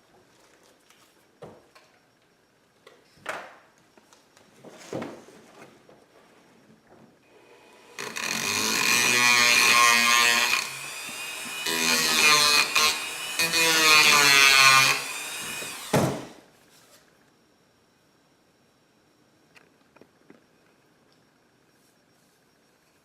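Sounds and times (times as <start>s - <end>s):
rotary tool grinding plastic: 7.9s - 15.9s.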